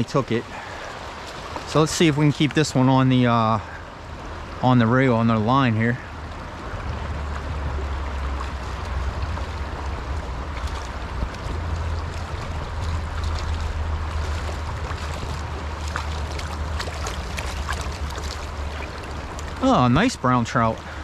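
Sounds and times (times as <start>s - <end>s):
stream water rushing: 0.0s - 21.0s
wind rumble on microphone: 6.0s - 21.0s.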